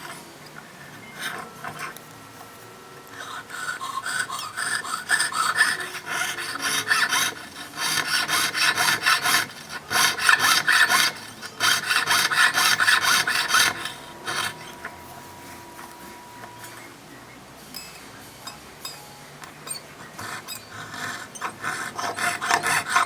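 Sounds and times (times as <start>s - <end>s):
hand file rasping on metal ring: 1.0s - 2.0s, 3.0s - 16.9s, 19.6s - 23.0s.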